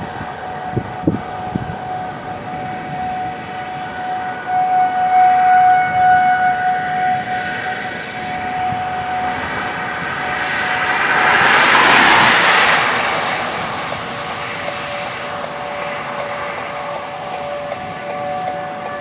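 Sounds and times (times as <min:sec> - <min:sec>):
tornado warning siren wailing: 0:00.0 - 0:19.0
passing vehicle rushing: 0:06.0 - 0:18.8.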